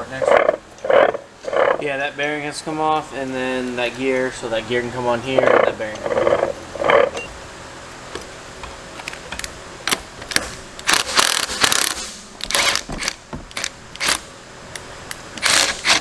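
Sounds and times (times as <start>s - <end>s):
hand tools clicking and scraping metal: 5.3s - 7.3s, 8.6s - 16.0s.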